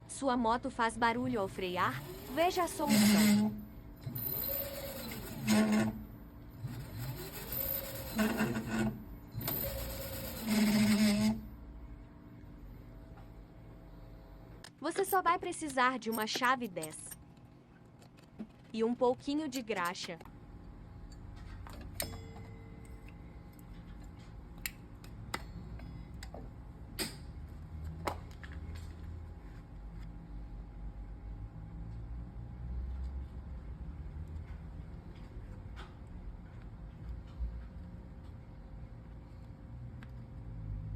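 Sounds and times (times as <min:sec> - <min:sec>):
electric motor whine: 0:06.6 - 0:11.5.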